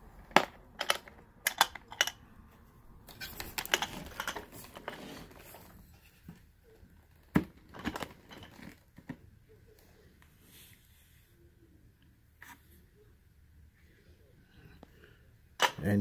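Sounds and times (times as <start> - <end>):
plastic parts rattling: 0.2 - 2.2, 3.0 - 6.4, 7.0 - 9.2
plastic clicks: 0.3 - 2.2, 3.1 - 4.8.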